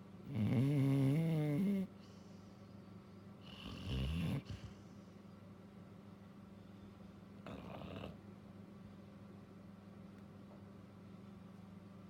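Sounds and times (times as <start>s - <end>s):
dog snoring: 0.3s - 1.9s, 3.4s - 4.8s, 7.4s - 8.2s.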